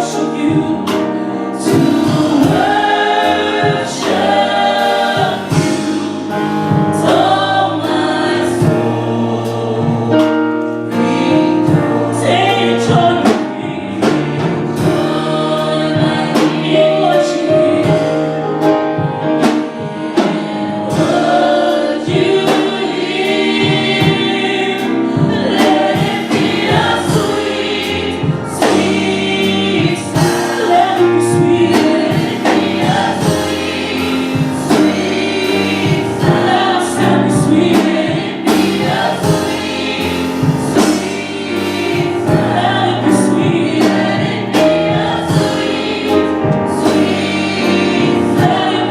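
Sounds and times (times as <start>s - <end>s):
drums and bass: 0.0s - 48.9s
gospel choir singing: 0.0s - 48.9s.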